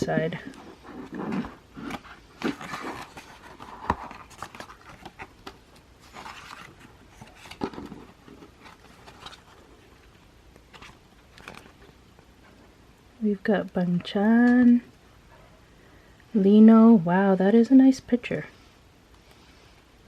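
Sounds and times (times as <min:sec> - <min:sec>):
paper pages rustling: 0:00.4 - 0:12.0.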